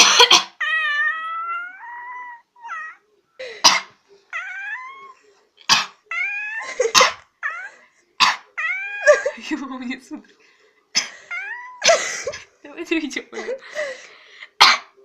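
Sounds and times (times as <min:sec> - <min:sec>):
person coughing: 0:00.0 - 0:00.6
cat meowing: 0:00.6 - 0:03.1, 0:04.3 - 0:05.2, 0:06.0 - 0:06.8, 0:08.5 - 0:09.3, 0:11.3 - 0:11.8.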